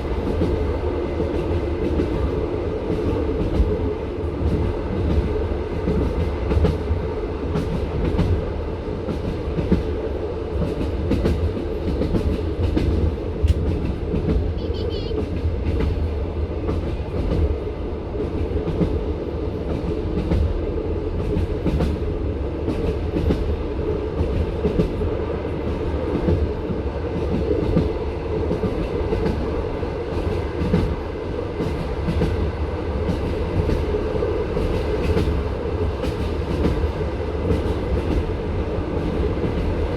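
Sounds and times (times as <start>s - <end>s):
train wheels rumbling on rails: 0.0s - 39.9s.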